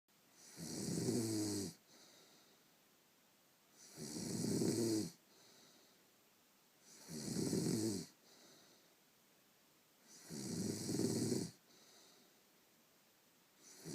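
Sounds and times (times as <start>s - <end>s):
woman snoring: 0.4s - 1.8s, 3.8s - 5.2s, 6.8s - 8.2s, 10.0s - 11.6s, 13.6s - 13.9s
quiet breath: 1.7s - 3.0s, 4.8s - 9.2s, 10.0s - 12.8s, 13.5s - 13.9s.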